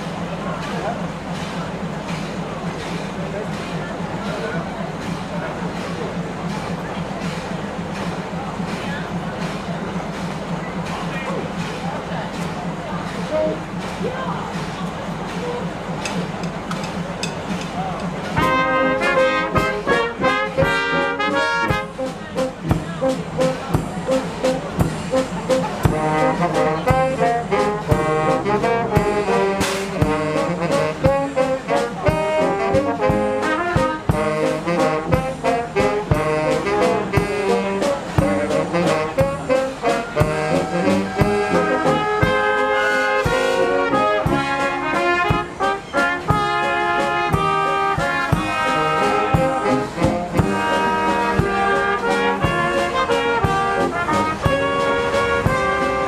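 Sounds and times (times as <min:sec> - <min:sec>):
steady drum beat: 0:00.0 - 0:56.0
trombones and trumpets playing: 0:13.2 - 0:14.6, 0:18.1 - 0:56.0.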